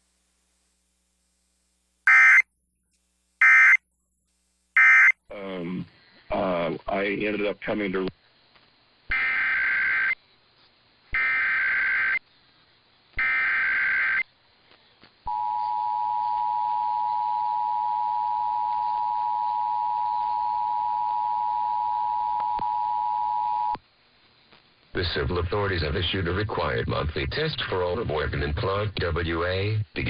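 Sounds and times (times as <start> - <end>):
two-tone attention signal: 2.1 - 2.4, 3.4 - 3.8, 4.8 - 5.2.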